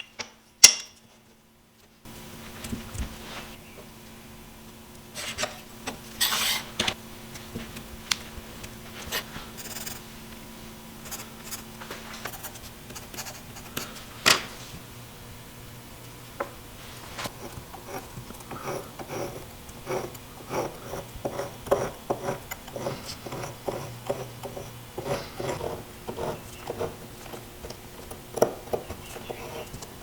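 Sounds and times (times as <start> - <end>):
steady low hum: 0.0 - 30.0
hand tool scraping wood: 17.2 - 30.0.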